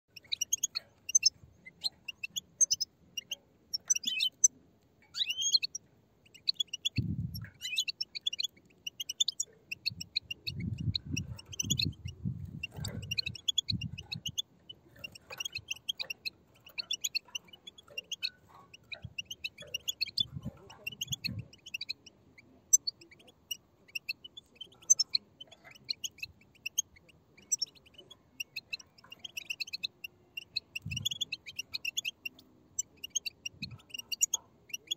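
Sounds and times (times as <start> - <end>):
bird chicks chirping: 0.1 - 34.9.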